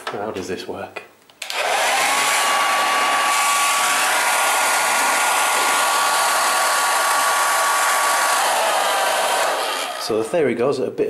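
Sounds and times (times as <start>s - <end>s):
hair dryer running: 1.4s - 10.2s.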